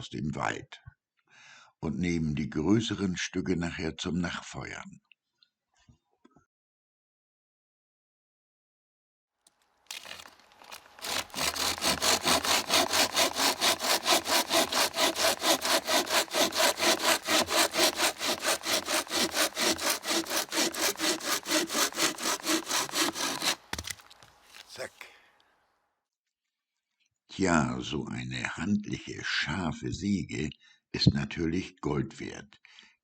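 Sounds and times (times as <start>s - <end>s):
hand saw cutting wood: 9.9s - 24.7s.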